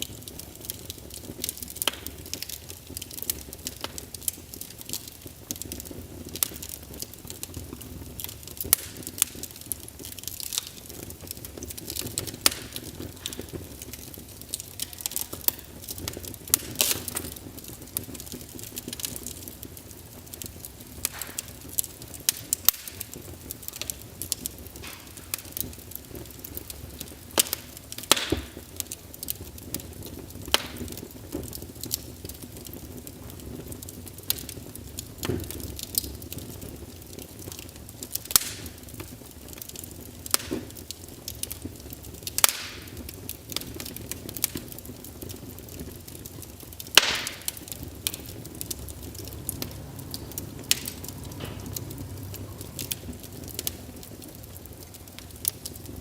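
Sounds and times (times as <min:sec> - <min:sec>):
wood fire crackling: 0:00.0 - 0:56.0
sharp pops: 0:21.0 - 0:24.0, 0:27.4 - 0:28.6, 0:42.3 - 0:42.9, 0:46.9 - 0:53.0.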